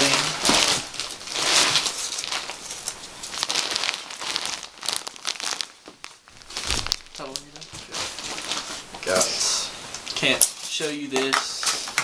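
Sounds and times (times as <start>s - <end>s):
packaging rustling and crinkling: 0.0s - 12.0s.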